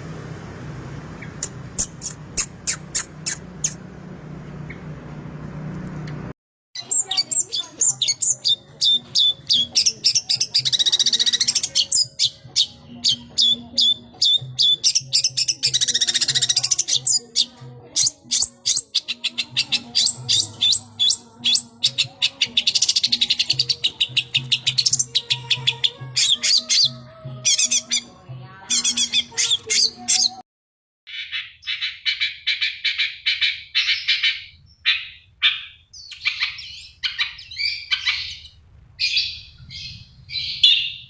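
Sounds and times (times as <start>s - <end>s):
bird chattering trills: 1.2s - 3.8s, 31.1s - 41.0s
bird singing sharp high notes: 31.1s - 41.0s.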